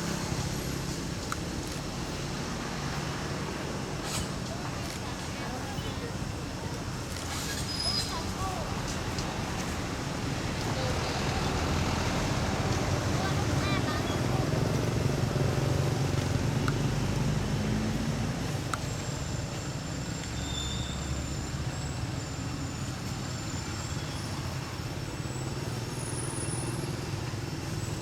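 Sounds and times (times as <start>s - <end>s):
road traffic rumble: 0.0s - 28.0s.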